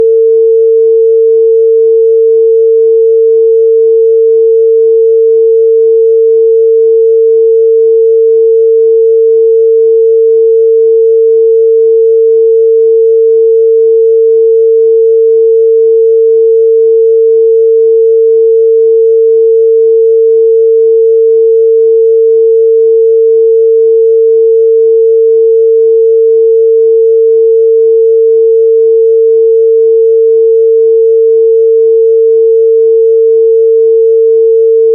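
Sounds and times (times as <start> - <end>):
sine wave test tone: 0.0 - 34.9.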